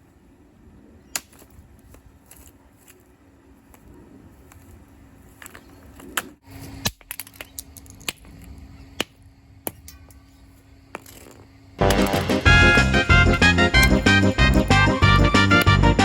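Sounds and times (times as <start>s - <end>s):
steady low hum: 0.0s - 16.0s
knocks and clatters of fan breaking: 11.8s - 15.9s
music: 11.8s - 16.0s.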